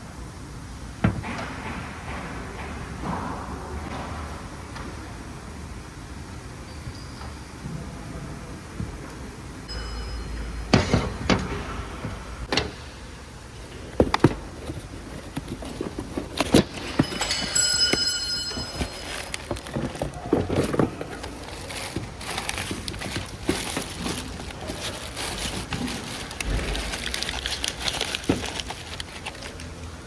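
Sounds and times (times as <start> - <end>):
short ringing tone: 9.7 - 11.3, 17.0 - 19.2
tools knocking and clanking: 9.8 - 12.9, 13.7 - 27.3.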